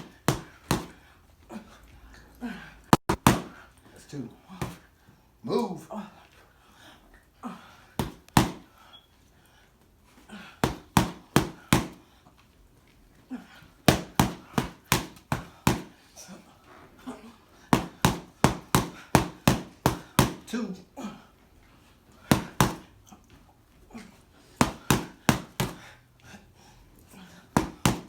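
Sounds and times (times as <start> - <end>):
sharp slaps on a hard floor: 0.0 - 1.0, 2.9 - 3.6, 8.0 - 8.7, 10.6 - 12.0, 13.9 - 16.0, 17.7 - 20.5, 22.3 - 22.9, 24.6 - 25.9, 27.5 - 28.0.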